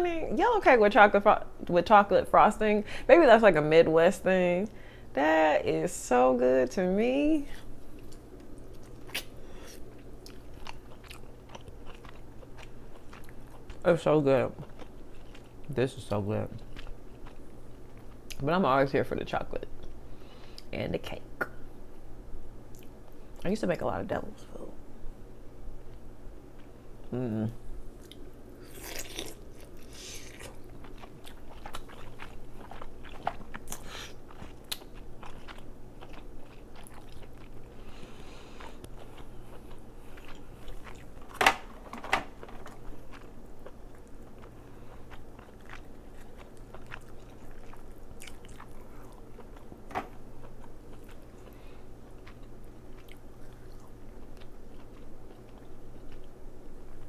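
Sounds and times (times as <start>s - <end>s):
chewing crab: 7.6s - 13.9s, 14.6s - 18.4s, 27.9s - 41.5s, 42.4s - 57.0s.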